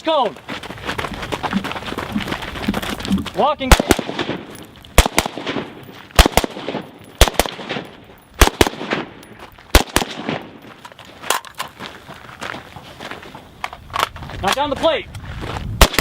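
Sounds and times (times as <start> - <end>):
gunshots: 3.6 - 10.6, 15.8 - 16.0.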